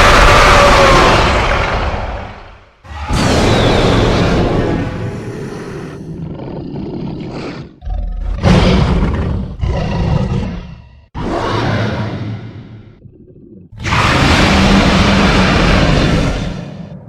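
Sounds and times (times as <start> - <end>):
dinosaur roars: 2.9 - 13.0, 13.7 - 17.0.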